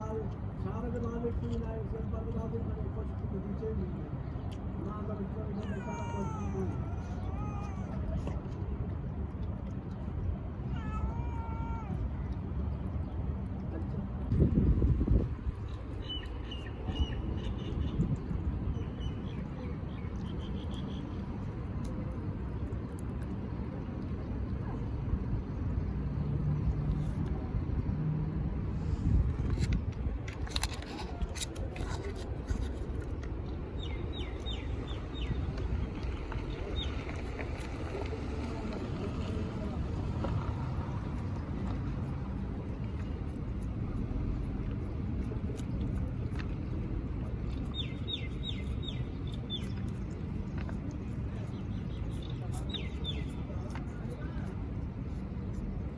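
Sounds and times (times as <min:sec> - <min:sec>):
vehicle engine rumble: 0:00.0 - 0:55.9.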